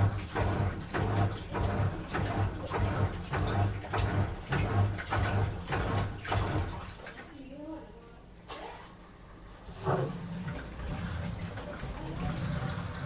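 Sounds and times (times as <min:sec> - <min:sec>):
washing machine motor hum: 0:00.0 - 0:13.0
water and laundry sloshing: 0:00.0 - 0:13.0.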